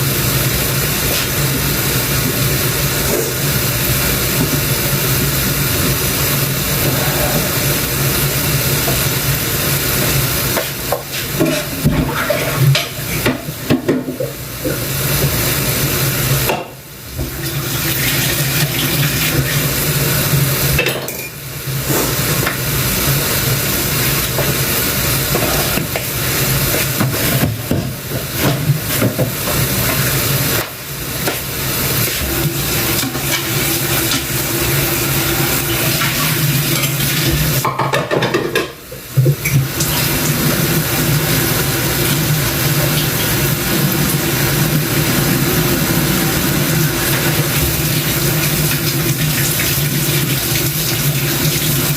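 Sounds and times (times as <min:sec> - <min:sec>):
dishes and utensils clinking: 0:20.8 - 0:21.4.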